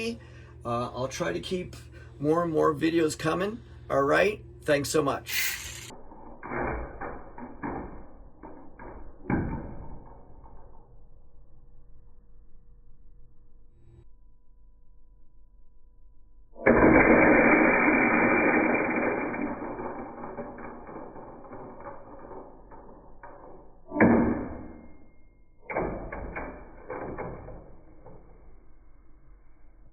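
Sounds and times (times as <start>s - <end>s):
toy launcher rattling: 5.2s - 5.9s, 16.8s - 22.5s.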